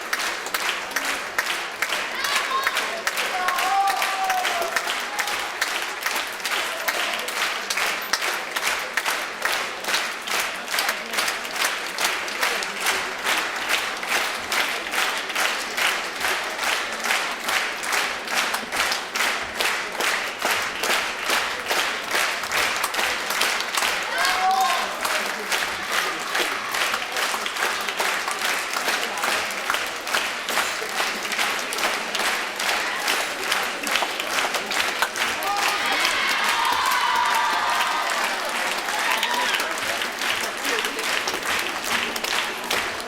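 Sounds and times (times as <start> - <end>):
audience applauding: 0.0 - 43.0
rhythmic unison clapping: 0.0 - 43.0.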